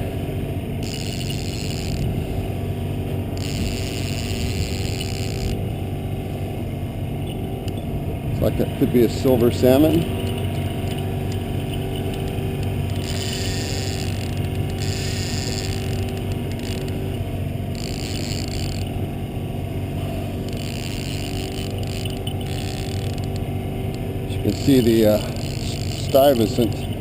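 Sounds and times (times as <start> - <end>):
boat motor humming: 0.0 - 27.0
higher motor whirring: 0.0 - 27.0.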